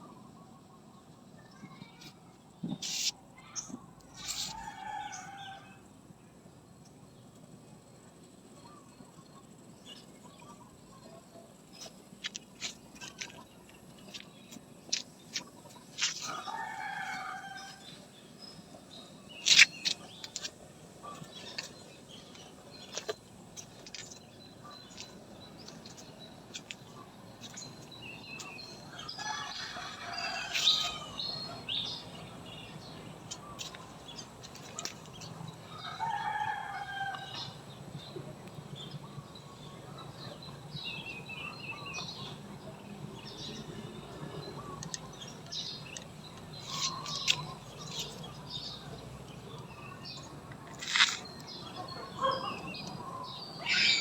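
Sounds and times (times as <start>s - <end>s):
rooster crowing: 16.3s - 17.8s, 29.1s - 31.4s, 35.7s - 37.6s
bird chirps and clicks: 19.4s - 28.6s, 33.2s - 35.3s, 44.1s - 48.4s, 50.5s - 53.2s.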